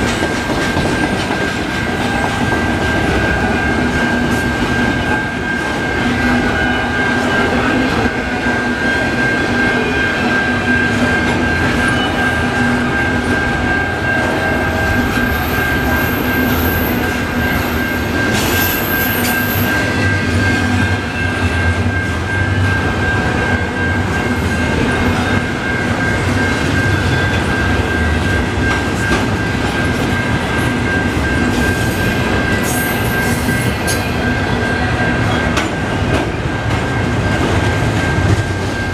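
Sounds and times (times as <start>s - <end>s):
train wheels clacking over rail joints: 0.0s - 5.8s, 12.9s - 21.0s.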